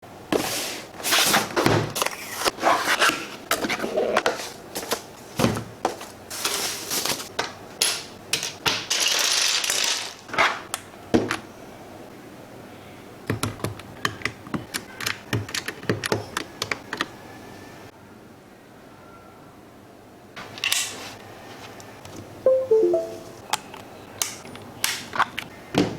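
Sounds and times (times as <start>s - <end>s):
mechanical keyboard keystrokes: 13.3s - 17.1s.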